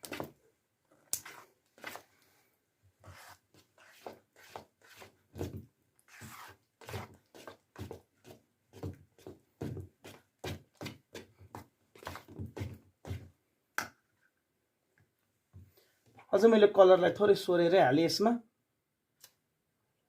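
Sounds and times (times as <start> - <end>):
slime being stirred by hand: 0.0 - 0.4, 1.0 - 2.4, 3.0 - 13.4.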